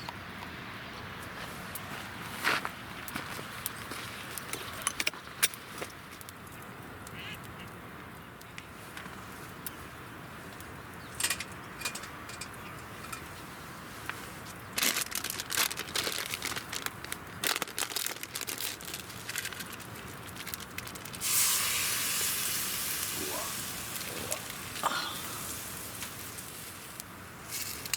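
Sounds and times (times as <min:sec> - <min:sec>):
fire crackling: 0:01.7 - 0:27.9
meat sizzling on a grill: 0:20.7 - 0:27.9.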